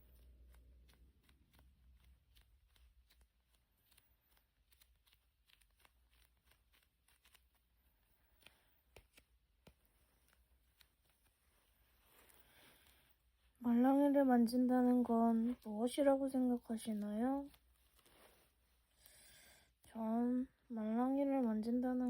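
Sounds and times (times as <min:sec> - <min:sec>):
faint clicks and taps: 0:00.0 - 0:13.2.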